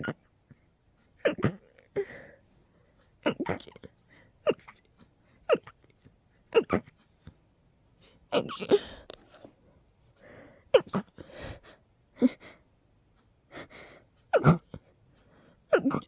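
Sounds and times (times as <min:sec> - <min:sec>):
breaths: 0:02.0 - 0:03.1, 0:04.0 - 0:04.4, 0:08.0 - 0:12.7, 0:13.5 - 0:14.2, 0:14.8 - 0:15.7
person sneezing: 0:14.3 - 0:14.6.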